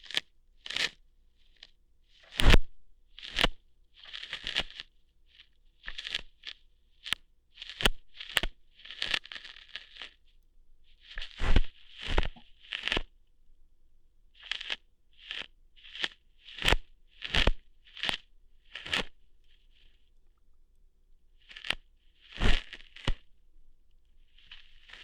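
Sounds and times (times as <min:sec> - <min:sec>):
crackling tearing snaps: 0:02.3 - 0:02.6, 0:05.9 - 0:10.2.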